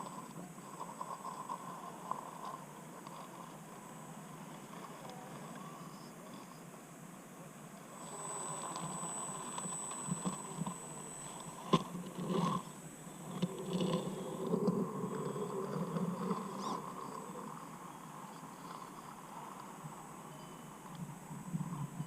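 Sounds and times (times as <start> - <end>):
rc car motor whining: 7.9 - 21.0.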